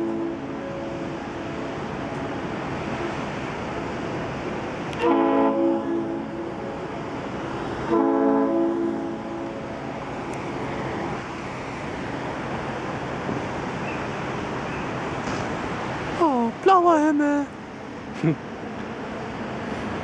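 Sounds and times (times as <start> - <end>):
ship's horn blasts: 0.0 - 1.8, 4.9 - 7.2, 7.8 - 9.9.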